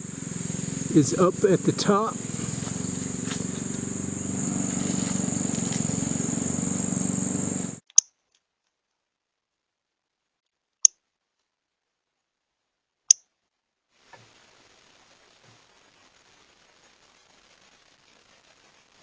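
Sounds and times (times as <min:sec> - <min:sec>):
low droning hum: 0:00.0 - 0:07.8.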